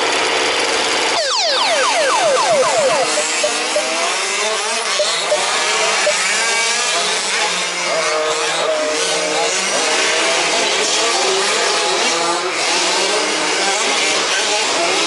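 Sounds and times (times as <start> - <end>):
rc buggy engines revving: 3.9 - 15.0.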